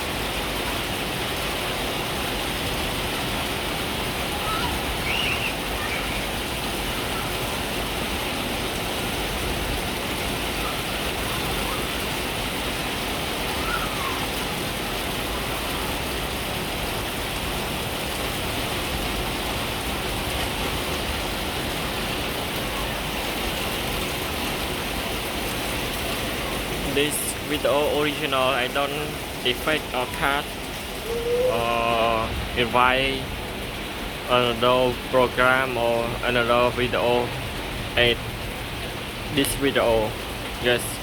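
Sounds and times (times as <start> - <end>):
rain pouring: 0.0 - 41.0.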